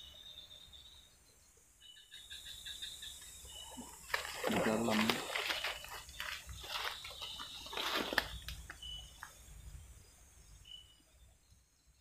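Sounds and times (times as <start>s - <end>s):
insect chirp: 0.0s - 12.0s
water sloshing and splashing: 3.8s - 8.9s.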